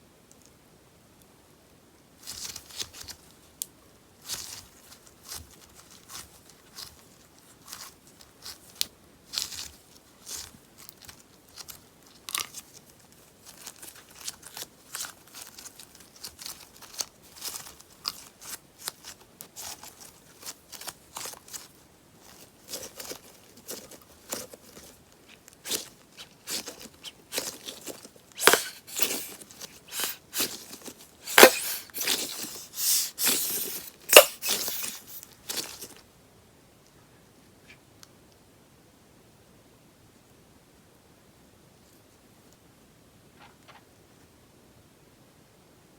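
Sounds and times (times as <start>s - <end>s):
slime crackling and popping: 25.6s - 35.9s.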